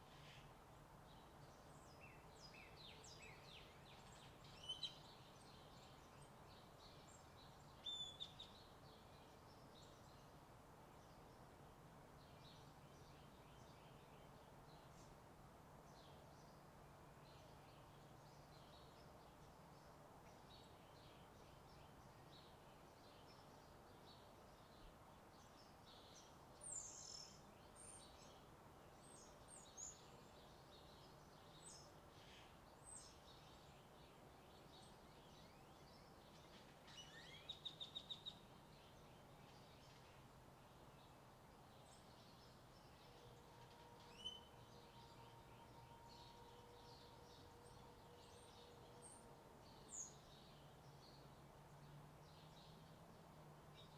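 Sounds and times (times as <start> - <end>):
bird chirps: 43.4 - 50.5.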